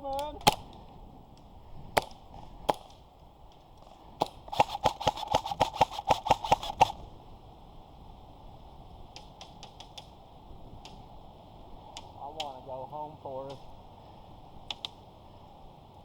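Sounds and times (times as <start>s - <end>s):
airsoft gun firing: 4.2s - 7.0s.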